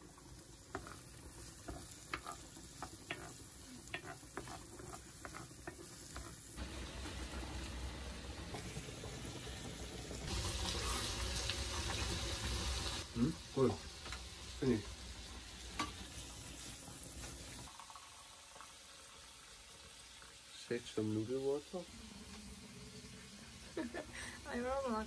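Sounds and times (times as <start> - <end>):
utensil scraping in a pot: 0.0 - 6.6
cooking hiss: 0.0 - 25.0.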